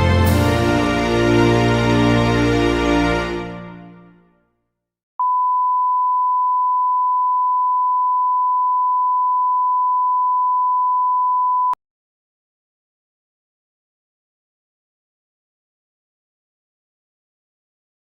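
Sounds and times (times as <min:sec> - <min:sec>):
music: 0:00.0 - 0:04.7.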